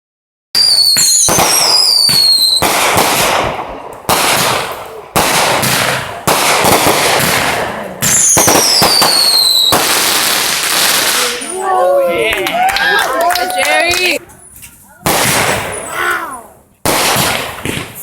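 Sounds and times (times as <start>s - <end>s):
loud firework bangs: 0.6s - 11.6s, 15.0s - 16.0s, 16.8s - 18.0s.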